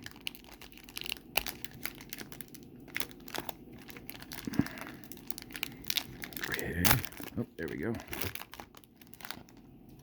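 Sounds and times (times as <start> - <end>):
plastic wrapper crinkling and tearing: 0.0 - 10.0.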